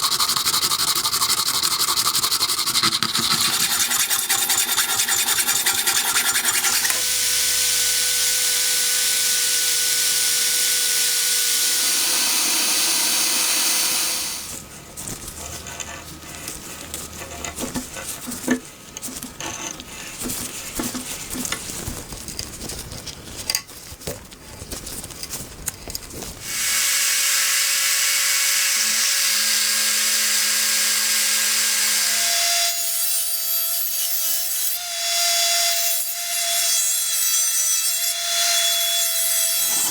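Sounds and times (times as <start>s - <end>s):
hand scraping and rubbing: 0.0s - 7.0s, 14.4s - 26.4s
small power tool running: 0.0s - 14.6s, 26.4s - 32.8s.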